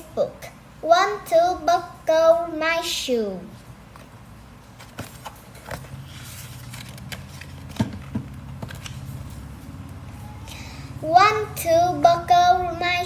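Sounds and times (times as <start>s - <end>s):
paper rustle: 4.0s - 9.6s.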